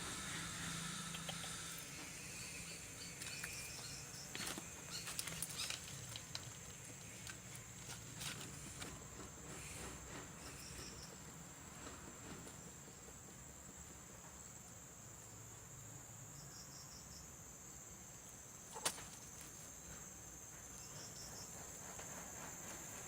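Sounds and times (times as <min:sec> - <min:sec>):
high-pitched insect chirring: 0:00.2 - 0:05.8.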